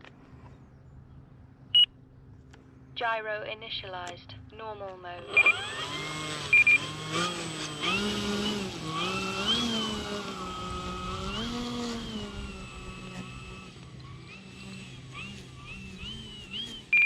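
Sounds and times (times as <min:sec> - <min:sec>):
model airplane motor whine: 0:05.1 - 0:17.0.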